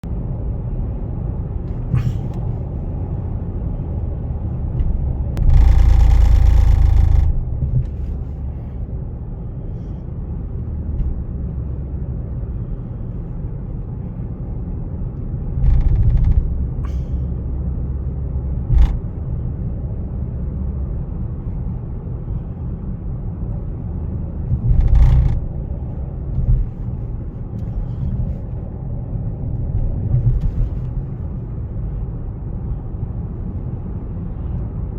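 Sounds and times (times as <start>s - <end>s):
low car rumble: 0.0s - 34.9s
loud rushing noise: 5.4s - 7.6s.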